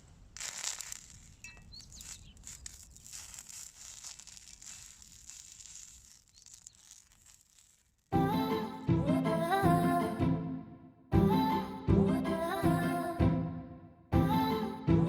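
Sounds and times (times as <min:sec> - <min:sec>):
faint rustling and crinkling: 0:00.0 - 0:08.1.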